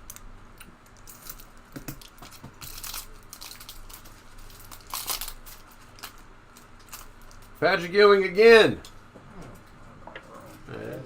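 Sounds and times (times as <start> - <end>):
foil card packs crinkling: 1.0 - 7.6.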